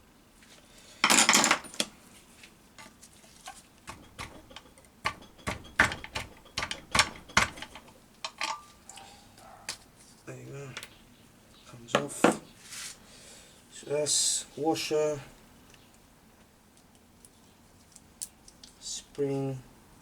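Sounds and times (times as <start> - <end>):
rattling scrape: 3.5 - 8.0
sharp metal clicks: 3.9 - 8.0
screwdriver clinking on metal parts: 3.9 - 8.8.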